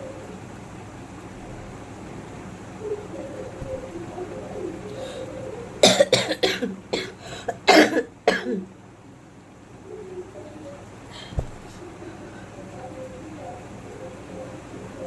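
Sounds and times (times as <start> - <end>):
woman coughing harshly: 5.8 - 8.7.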